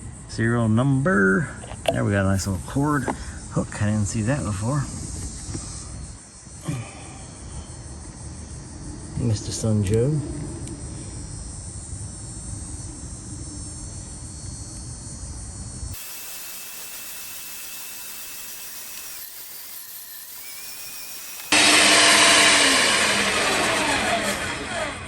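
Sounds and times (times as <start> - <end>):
crickets chirping: 0.0 - 21.6
steady hiss: 11.0 - 21.6
wood chipper motor whining: 15.9 - 25.0.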